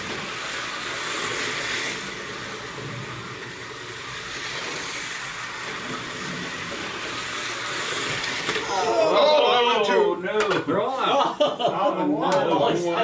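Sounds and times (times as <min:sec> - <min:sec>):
slot car electric motors whining: 0:00.0 - 0:09.6.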